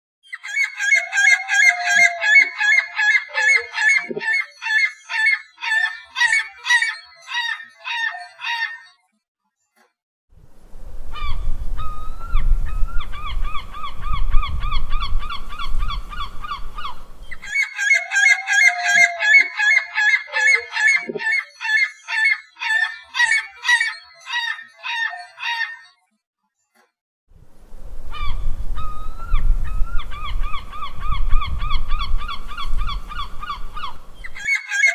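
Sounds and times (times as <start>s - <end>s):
gull laughing cries: 0.4s - 5.0s, 17.4s - 25.8s
lower-pitched gull calling: 0.4s - 8.8s, 11.1s - 25.8s, 28.1s - 34.9s.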